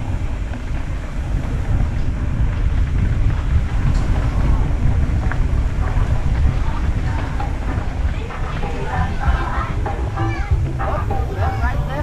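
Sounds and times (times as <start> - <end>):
bike tyres rolling: 0.0 - 12.0
wind buffeting microphone: 0.0 - 12.0.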